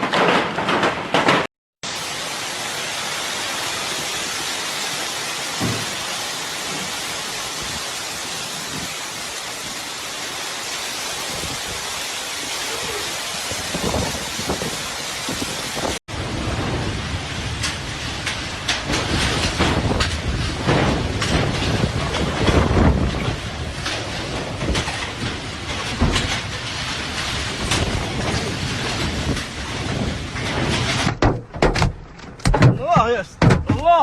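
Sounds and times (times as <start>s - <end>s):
hailstones knocking: 0.0s - 34.0s
heavy rain hissing: 1.8s - 31.0s
strong wind rumbling: 2.1s - 31.2s.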